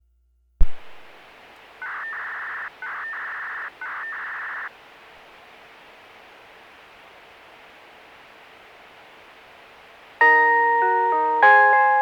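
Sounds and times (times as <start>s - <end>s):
radio static hiss: 0.6s - 10.3s
electronic beeps: 1.8s - 4.7s.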